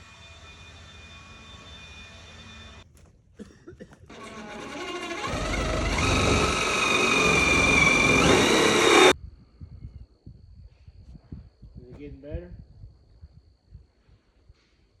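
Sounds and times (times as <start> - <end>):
motor whine spinning up: 4.1 - 9.1.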